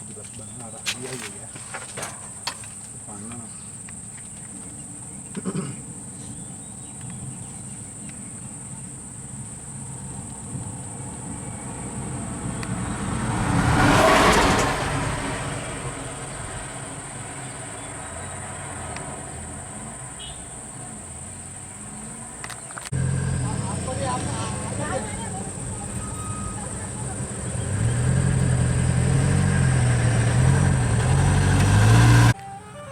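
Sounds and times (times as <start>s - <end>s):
vehicle passing by: 9.8s - 32.9s.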